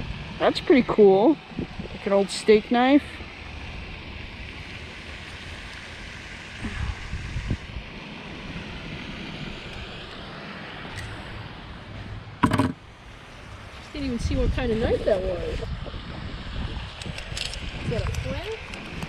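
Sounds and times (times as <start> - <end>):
wind buffeting microphone: 0.0 - 2.9, 6.6 - 9.9, 13.5 - 19.0
soft thumps: 12.4 - 12.8.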